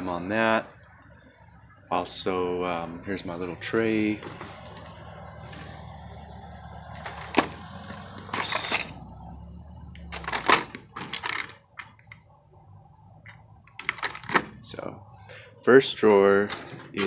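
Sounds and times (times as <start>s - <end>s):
tools clattering and rattling: 4.2s - 5.8s, 6.9s - 9.0s, 10.0s - 12.3s, 13.2s - 14.8s, 16.4s - 17.0s
tool chest drawer click: 10.0s - 12.1s.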